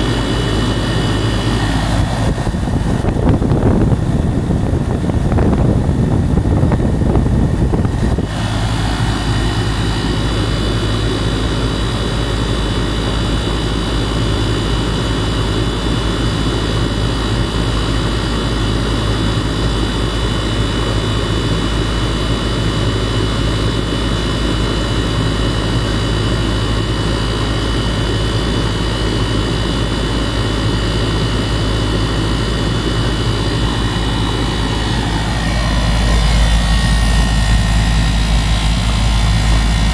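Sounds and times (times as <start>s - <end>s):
air conditioner hum with whine: 0.0s - 16.3s, 27.4s - 39.9s.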